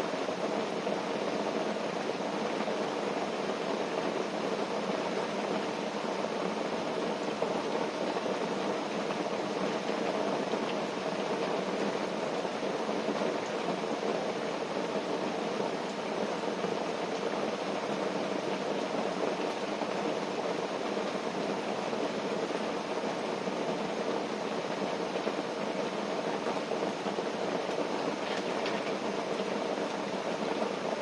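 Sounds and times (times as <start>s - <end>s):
rain on a tent: 0.0s - 31.0s.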